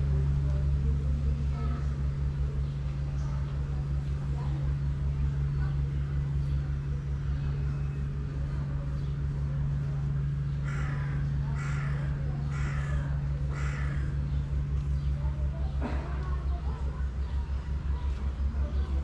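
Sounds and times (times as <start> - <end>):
steady low hum: 0.0 - 19.0
crow cawing: 10.6 - 14.2.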